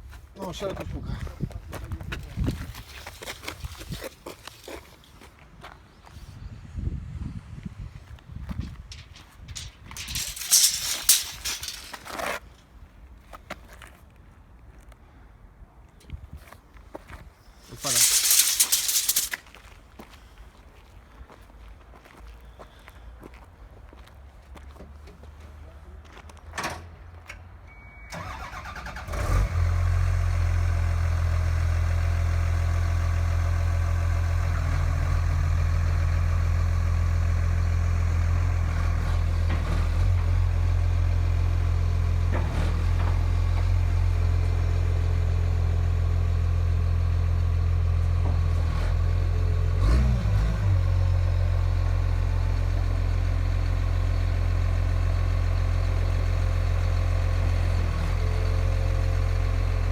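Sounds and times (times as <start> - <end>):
diesel engine starting and idling: 28.0 - 59.9.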